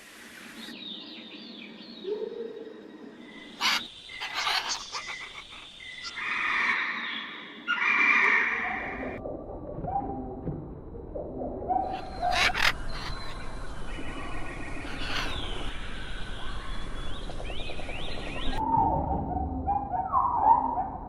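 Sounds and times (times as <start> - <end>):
bird chirps: 0.7 - 7.6, 11.8 - 18.6
low bird calls: 3.2 - 9.2, 11.7 - 18.7.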